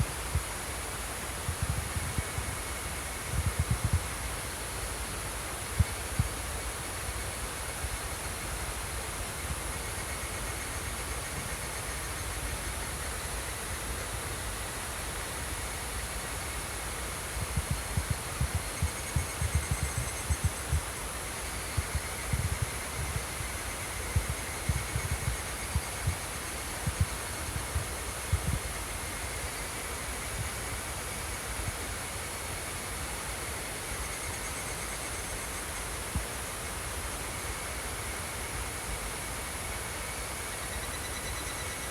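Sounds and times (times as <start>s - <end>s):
insects chirping: 15.4s - 30.5s, 39.6s - 41.9s.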